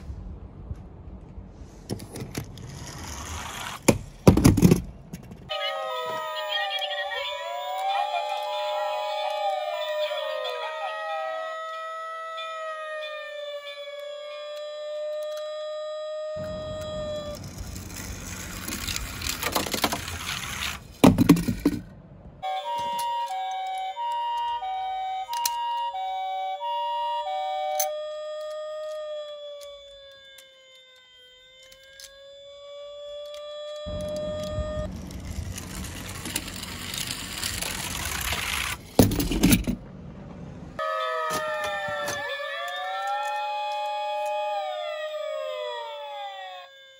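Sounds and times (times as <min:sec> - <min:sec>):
toy cars rattling and rolling: 0:01.9 - 0:11.2, 0:16.8 - 0:26.2, 0:27.0 - 0:32.2, 0:33.2 - 0:39.8, 0:40.9 - 0:44.6
toys clattering together: 0:03.8 - 0:05.5, 0:17.4 - 0:21.9, 0:34.9 - 0:39.8
two-tone high-low siren: 0:05.5 - 0:19.7, 0:22.4 - 0:38.6, 0:40.8 - 0:46.9
steady electronic tones: 0:12.4 - 0:18.6, 0:22.4 - 0:35.9
loud clatter: 0:34.0 - 0:40.6.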